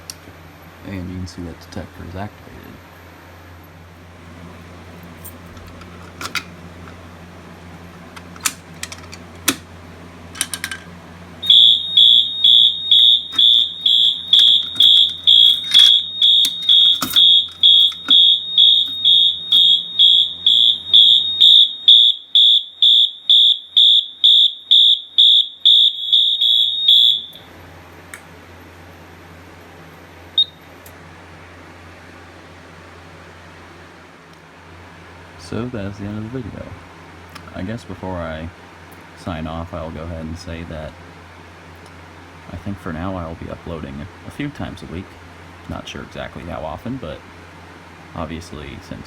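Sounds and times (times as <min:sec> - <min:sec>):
pulsing fire alarm horn: 0:11.4 - 0:27.5
clicks: 0:13.0 - 0:20.0.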